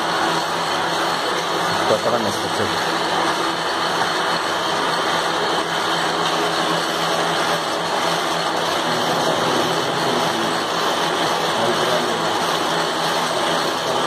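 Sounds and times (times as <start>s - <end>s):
metal lathe humming: 0.0s - 14.0s.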